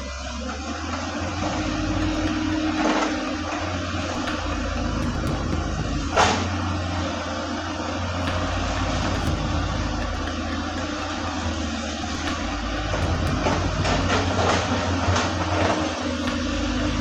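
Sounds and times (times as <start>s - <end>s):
hydraulic whine: 0.1s - 17.0s
sharp knock: 2.0s - 6.5s, 8.2s - 17.0s
excavator diesel engine running: 8.0s - 17.0s.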